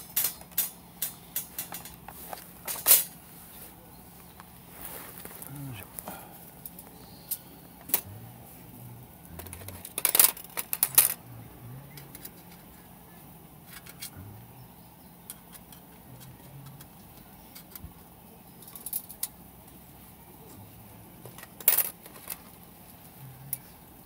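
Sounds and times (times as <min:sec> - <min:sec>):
small metal gear clinking: 0:00.0 - 0:03.2, 0:09.4 - 0:11.2, 0:18.6 - 0:19.4, 0:21.3 - 0:22.5.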